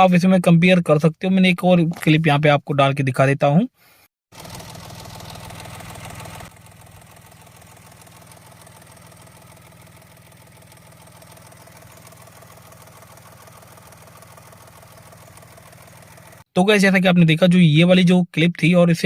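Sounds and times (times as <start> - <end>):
car engine idling: 4.4 - 16.4.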